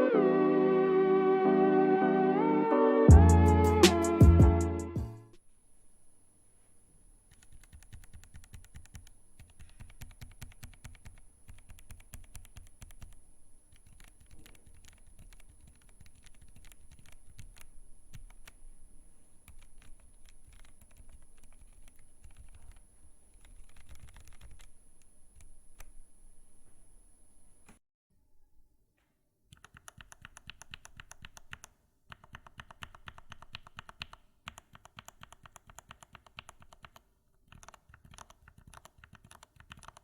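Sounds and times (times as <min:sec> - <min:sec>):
typing on mechanical keyboard: 0:07.3 - 0:18.7, 0:19.4 - 0:26.0, 0:29.5 - 0:40.0.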